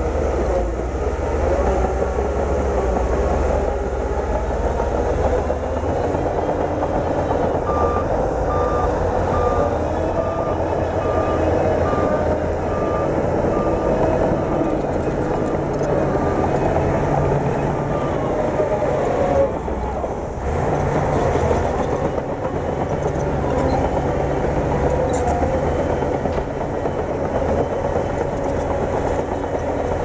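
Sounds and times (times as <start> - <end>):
bulldozer diesel engine: 0.0 - 30.0
reversing alarm beeping: 5.8 - 18.6.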